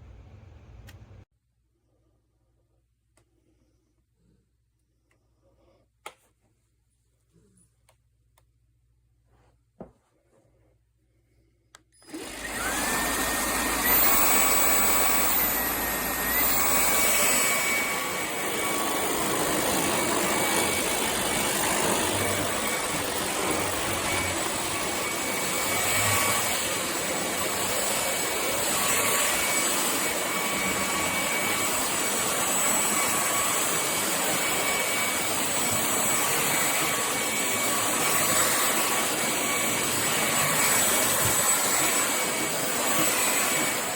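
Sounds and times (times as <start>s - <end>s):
vacuum cleaner motor whine: 12.0s - 43.9s.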